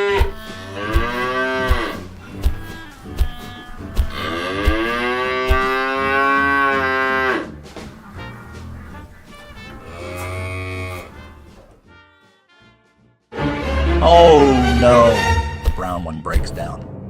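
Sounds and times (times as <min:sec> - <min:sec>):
cow mooing: 0:00.0 - 0:11.5
light background music: 0:00.0 - 0:17.0.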